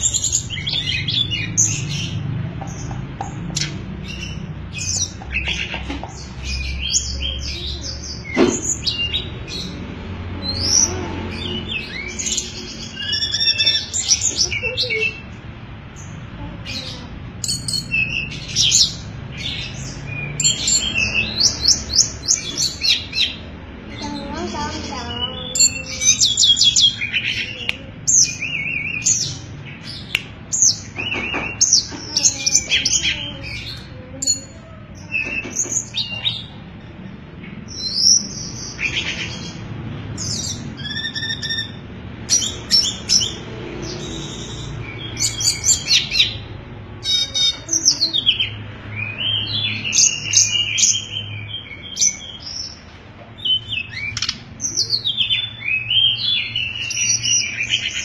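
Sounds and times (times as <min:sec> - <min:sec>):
songbird chirping and trilling: 0:00.0 - 0:58.0.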